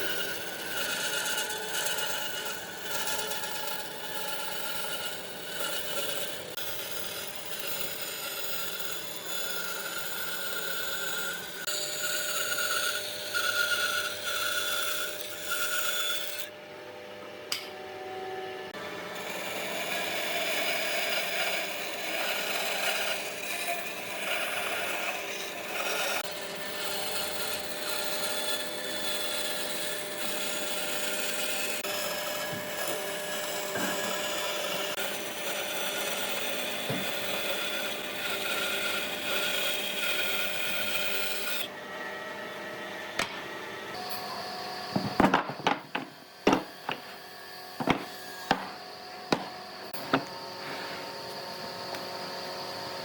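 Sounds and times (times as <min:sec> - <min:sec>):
tool scraping on wood: 0:00.0 - 0:16.6, 0:18.7 - 0:41.7, 0:45.0 - 0:47.2, 0:47.8 - 0:51.3
sharp knocks: 0:45.0 - 0:47.0, 0:47.8 - 0:50.3.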